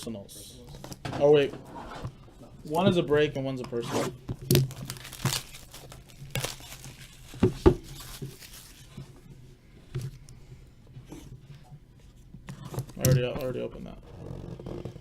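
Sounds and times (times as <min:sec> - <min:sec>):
plastic wrapping crackling: 0:04.5 - 0:09.0.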